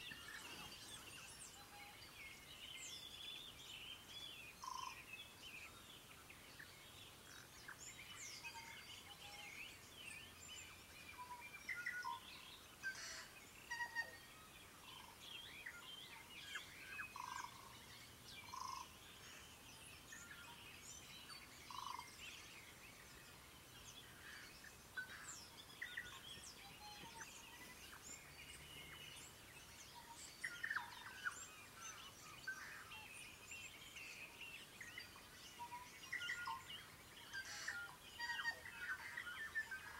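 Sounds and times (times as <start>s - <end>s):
birds singing: 0.0s - 39.9s.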